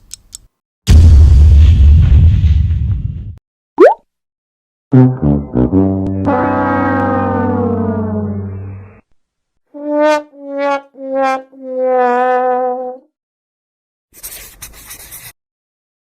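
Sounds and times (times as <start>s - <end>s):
sad trombone notes: 5.0s - 8.5s.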